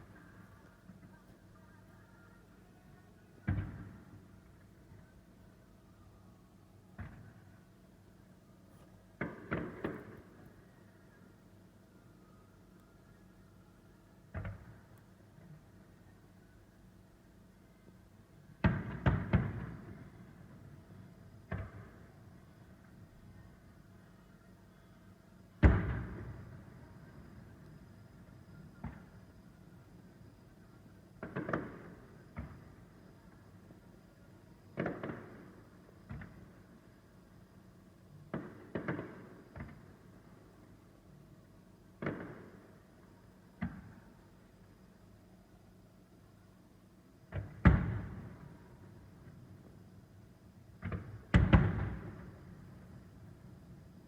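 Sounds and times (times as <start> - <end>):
fireworks booming: 3.4 - 4.4, 9.2 - 10.6, 18.6 - 20.6, 25.6 - 29.3, 31.2 - 32.9, 34.7 - 36.6, 38.3 - 40.0, 42.0 - 42.9, 47.3 - 49.3, 50.8 - 53.6
firework shells booming: 31.2 - 32.7, 38.3 - 39.8, 50.8 - 52.4.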